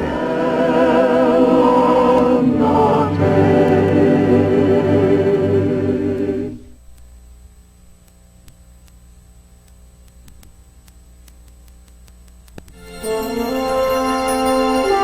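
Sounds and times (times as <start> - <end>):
sung music with held notes: 0.0 - 6.6, 12.7 - 15.0
low steady hum: 0.0 - 15.0
faint tape ticks: 6.8 - 12.8.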